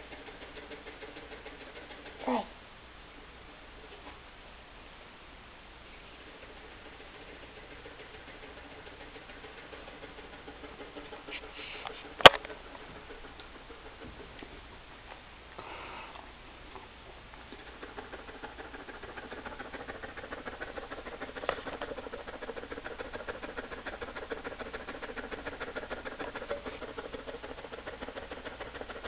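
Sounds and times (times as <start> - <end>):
dog panting: 0.0 - 2.4, 5.9 - 15.2, 16.7 - 29.0.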